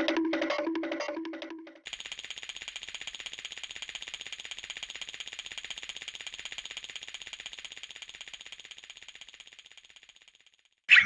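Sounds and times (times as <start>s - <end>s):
rapid high-pitched ringing rattle: 1.8s - 10.9s.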